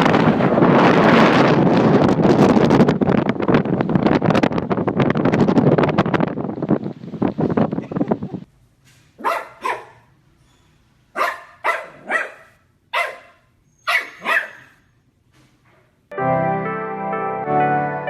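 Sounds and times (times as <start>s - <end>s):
dog barking: 9.2s - 10.1s, 11.1s - 14.8s
music: 16.1s - 18.0s.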